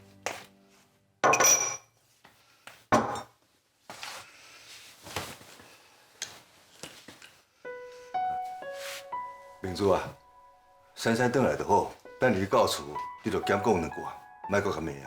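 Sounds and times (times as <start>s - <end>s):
dishes and utensils clinking: 1.2s - 1.9s.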